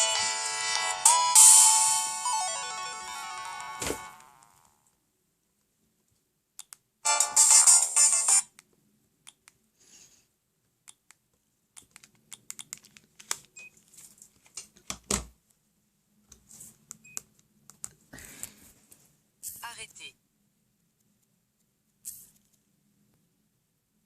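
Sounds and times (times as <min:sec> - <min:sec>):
phone melodic ringtone: 0:00.0 - 0:04.2, 0:07.1 - 0:08.4.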